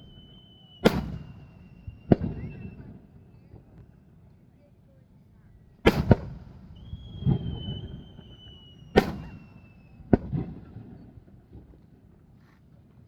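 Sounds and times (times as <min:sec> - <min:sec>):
fireworks booming: 0:00.0 - 0:03.0, 0:05.8 - 0:11.8
thin high whistle: 0:00.0 - 0:03.6, 0:06.7 - 0:10.1.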